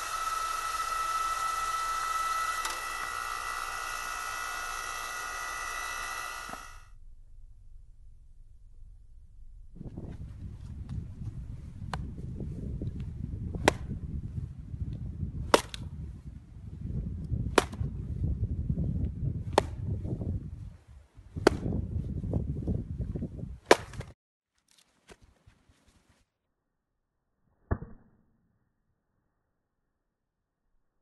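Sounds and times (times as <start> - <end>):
hydraulic axe cracking firewood: 0.0 - 6.8, 13.6 - 13.9, 15.5 - 15.8, 17.5 - 17.8, 23.7 - 24.1
power unit rumble: 0.0 - 20.7.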